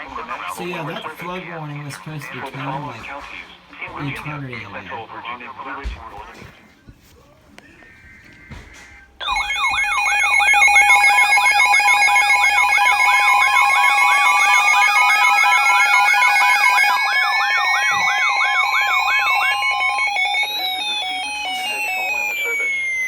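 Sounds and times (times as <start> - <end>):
rising siren wail: 9.2 - 23.0
steady alarm tones: 9.2 - 23.0
warbling alarm siren: 9.2 - 23.0.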